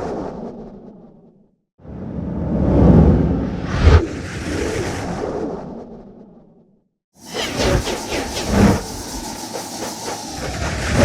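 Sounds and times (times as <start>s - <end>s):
dark noisy horror sound effect: 7.2s - 11.0s.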